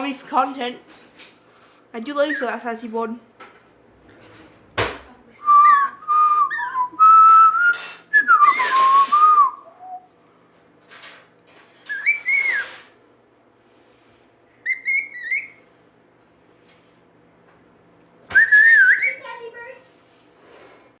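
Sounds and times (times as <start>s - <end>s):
bird whistling: 5.4s - 10.0s, 11.9s - 12.8s, 14.6s - 15.7s, 18.3s - 19.4s
scratchy bird calls: 11.9s - 12.7s.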